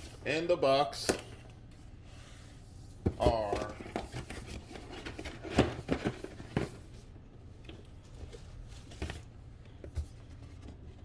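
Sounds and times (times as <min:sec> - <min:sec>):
packaging rustling and scraping: 0:03.0 - 0:07.1, 0:08.0 - 0:11.0.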